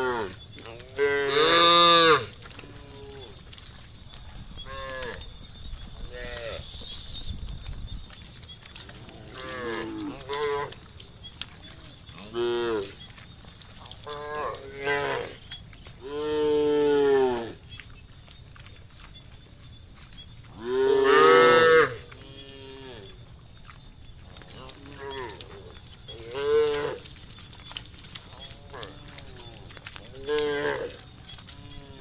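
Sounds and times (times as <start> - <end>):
cows mooing: 0.0 - 3.4, 4.6 - 5.3, 6.1 - 6.7, 8.8 - 10.8, 11.7 - 13.1, 14.0 - 15.4, 16.0 - 17.6, 20.5 - 23.2, 24.4 - 27.2, 28.2 - 32.0.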